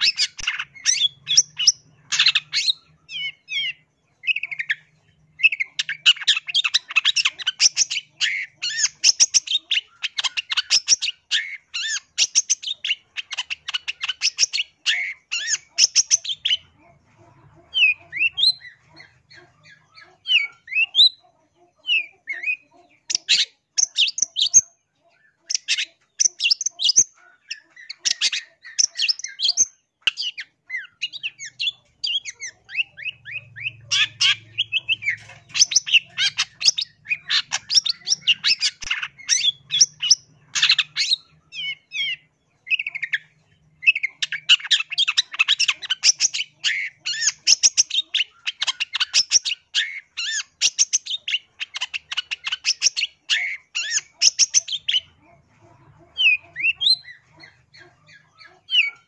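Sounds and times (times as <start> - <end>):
bird harsh chattering: 0.0 - 59.0.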